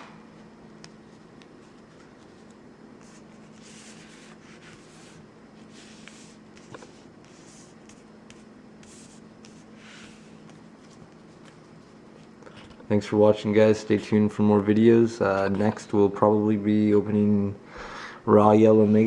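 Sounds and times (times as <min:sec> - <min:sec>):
trading cards rubbing and sliding: 0:01.2 - 0:12.8.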